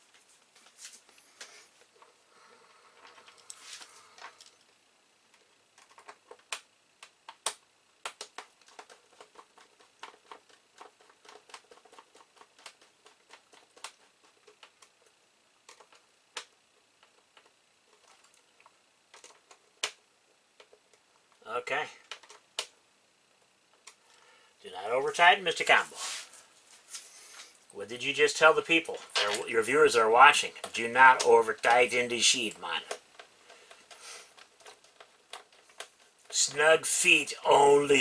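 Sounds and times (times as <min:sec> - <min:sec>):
plastic parts and screws clicking: 0:05.3 - 0:21.3, 0:22.0 - 0:22.8, 0:32.9 - 0:36.4
short rustle: 0:25.8 - 0:27.6.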